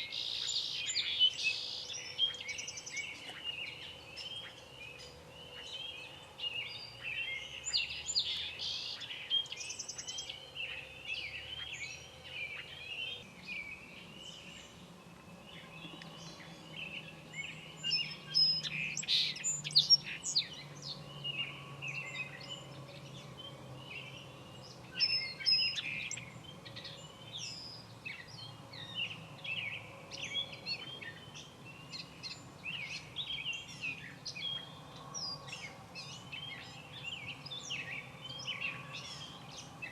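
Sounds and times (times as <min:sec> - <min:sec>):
small birds chirping chorus: 0:00.0 - 0:39.9.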